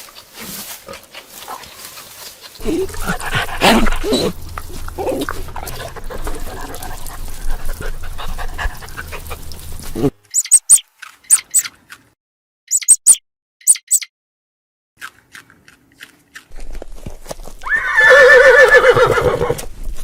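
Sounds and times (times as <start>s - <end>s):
dog whimpering: 2.6s - 4.4s
short high chirps: 10.3s - 11.7s, 12.7s - 14.1s.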